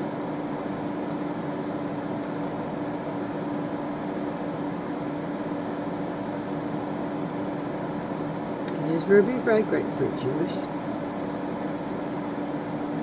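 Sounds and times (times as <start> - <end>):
mechanical hum: 0.0 - 13.0.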